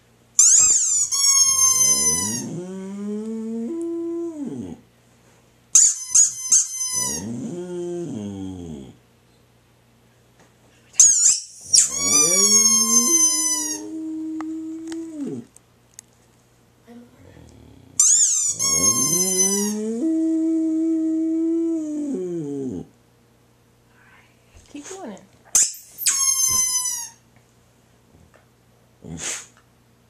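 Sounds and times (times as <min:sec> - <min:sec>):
squeaky dog toy: 0:00.4 - 0:02.5, 0:05.7 - 0:07.3, 0:11.0 - 0:13.9, 0:18.0 - 0:19.8, 0:25.5 - 0:27.2
dog howling: 0:01.3 - 0:04.8, 0:06.9 - 0:09.0, 0:11.7 - 0:15.5, 0:17.7 - 0:22.9.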